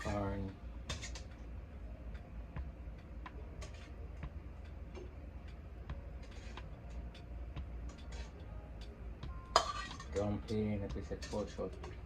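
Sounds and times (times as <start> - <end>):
steady low hum: 0.0 - 12.0
utensil tapping pot and dishes: 9.5 - 12.0.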